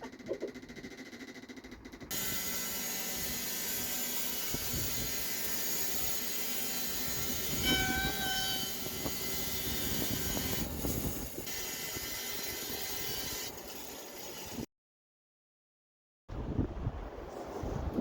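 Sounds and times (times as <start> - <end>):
high-pitched squeal: 2.1 - 14.7
saw mill cutting log: 2.1 - 14.7.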